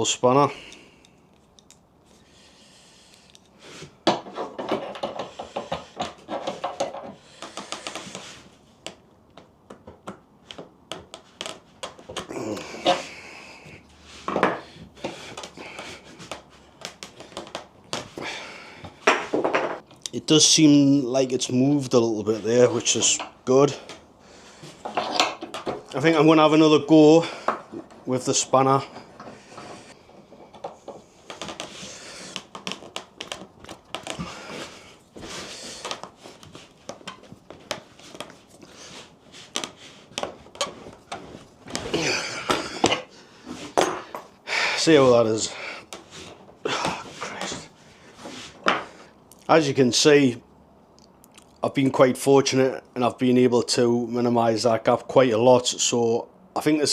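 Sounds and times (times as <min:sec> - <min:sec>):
spanner clinking and scraping on vise: 0:04.2 - 0:07.2, 0:24.8 - 0:26.0.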